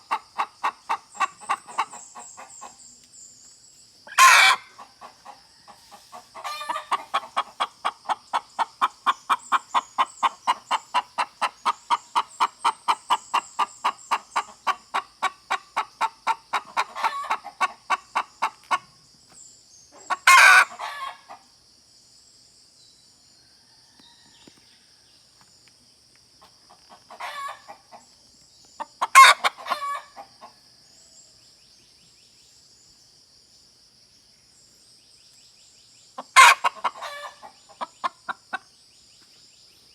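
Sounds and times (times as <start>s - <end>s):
hen clucking: 0.0s - 2.8s, 4.1s - 18.9s, 20.0s - 21.4s, 26.7s - 28.0s, 28.8s - 30.5s, 36.2s - 38.6s.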